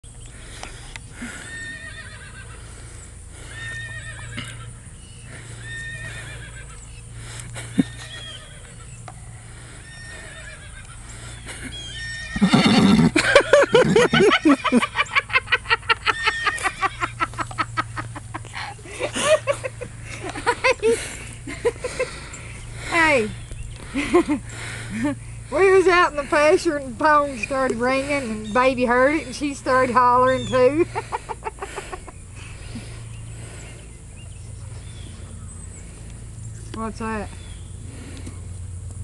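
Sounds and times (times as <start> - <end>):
horse whinnying: 1.3 - 2.6, 3.5 - 4.7, 5.6 - 6.8, 9.8 - 11.0, 11.7 - 14.3.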